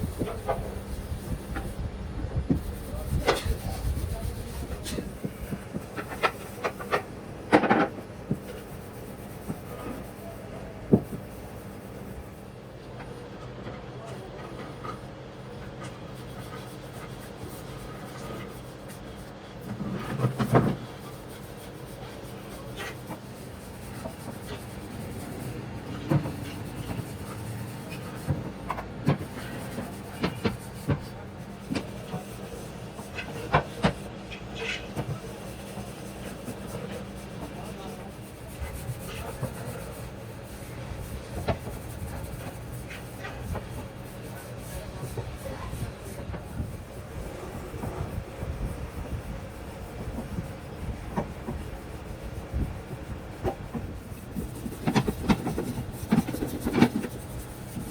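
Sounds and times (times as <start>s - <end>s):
wood rubbing and scraping: 19.7s - 57.9s.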